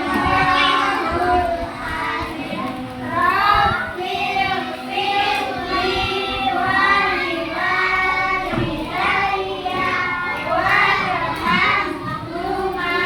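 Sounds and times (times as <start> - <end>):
children singing together: 0.0 - 13.0.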